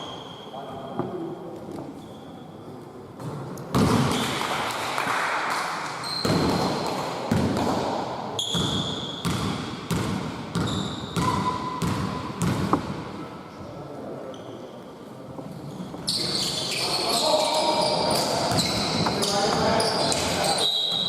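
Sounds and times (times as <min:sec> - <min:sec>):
hubbub of players' voices: 0:00.0 - 0:09.2, 0:10.2 - 0:21.0
basketball bouncing on hard court: 0:06.2 - 0:12.9
short high shoe squeaks: 0:08.4 - 0:09.2, 0:15.7 - 0:21.0.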